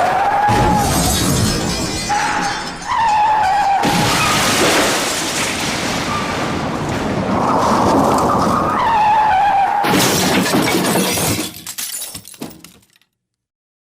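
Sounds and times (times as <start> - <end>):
crash of crunching metal: 0.4 - 8.0, 9.8 - 12.8
glass shattering: 0.5 - 6.4, 9.8 - 13.0
debris tinkling and clattering: 0.6 - 6.8, 9.9 - 13.1.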